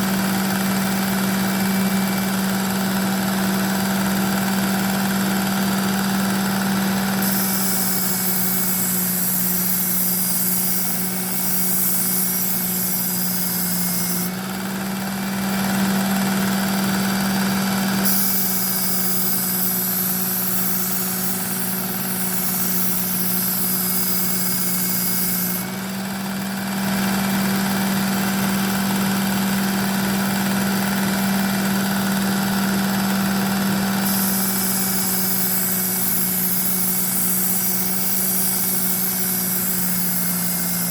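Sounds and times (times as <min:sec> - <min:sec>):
belt sharpener motor hum: 0:00.0 - 0:40.9
knife blade grinding on belt: 0:07.2 - 0:14.3, 0:18.0 - 0:25.7, 0:34.0 - 0:40.9.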